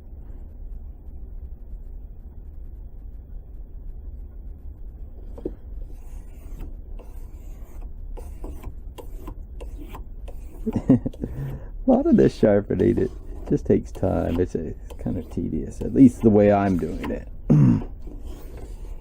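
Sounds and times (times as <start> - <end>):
steady low hum: 0.0 - 19.0
knife rubbing on sandpaper: 5.8 - 17.3, 17.9 - 19.0.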